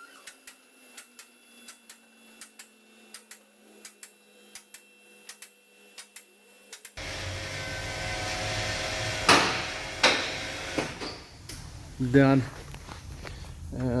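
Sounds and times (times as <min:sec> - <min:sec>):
noisy hum: 0:07.0 - 0:14.0
floor jack clicking: 0:09.2 - 0:11.3
sharp clunks: 0:09.2 - 0:11.3.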